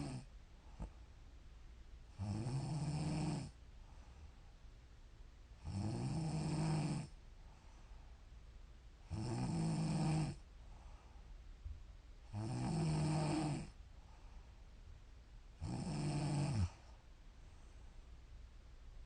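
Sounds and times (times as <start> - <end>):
woman snoring: 0.0 - 0.3, 2.2 - 3.5, 5.6 - 7.1, 9.1 - 10.4, 12.3 - 13.7, 15.6 - 16.8
quiet breathing: 0.0 - 1.3, 2.1 - 4.8, 6.4 - 18.3.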